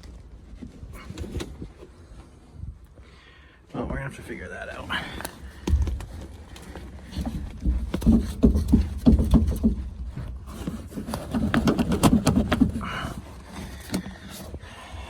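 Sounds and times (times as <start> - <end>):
metal parts knocking and clunking: 5.6 - 14.5.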